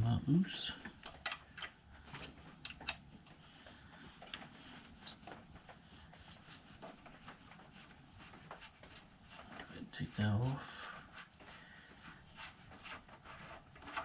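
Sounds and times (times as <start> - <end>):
faint metal handling clicks: 0.8 - 3.0.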